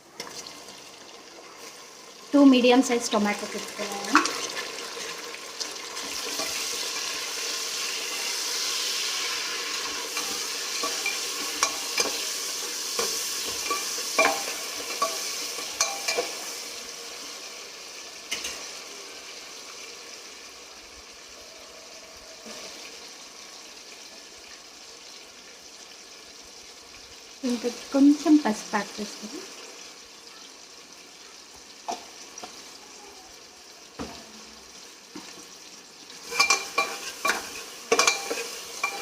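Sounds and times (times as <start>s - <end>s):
vegetables sizzling in hot oil: 0.0s - 39.0s
spatula scraping a pan: 6.0s - 16.5s, 36.2s - 39.0s.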